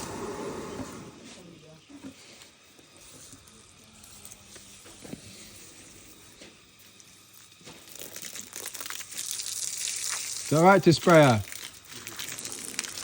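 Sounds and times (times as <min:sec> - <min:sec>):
water spray hissing: 0:00.0 - 0:01.5, 0:02.4 - 0:13.0
water splashes: 0:07.9 - 0:13.0.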